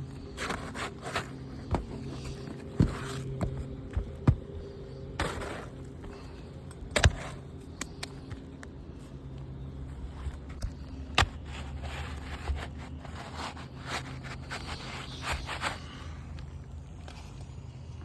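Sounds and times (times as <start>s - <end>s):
steady low hum: 0.0s - 18.0s
shingle scraping: 0.1s - 7.6s, 10.0s - 16.2s.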